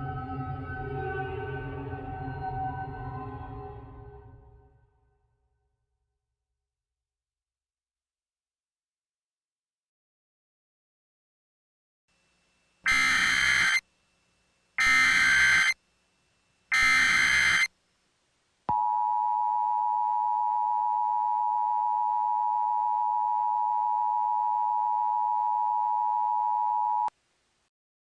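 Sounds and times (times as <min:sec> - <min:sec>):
digital header data bursts: 0:12.9 - 0:13.8, 0:14.8 - 0:15.8, 0:16.7 - 0:17.7
two-tone attention signal: 0:16.8 - 0:17.7.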